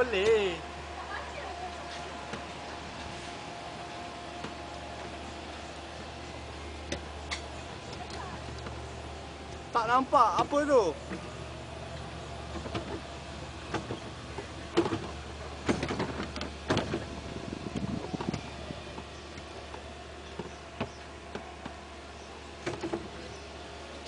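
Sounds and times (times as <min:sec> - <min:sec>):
electric motor hum: 0:00.0 - 0:24.0
sharp knocks and clatters: 0:13.7 - 0:17.1, 0:22.6 - 0:23.2.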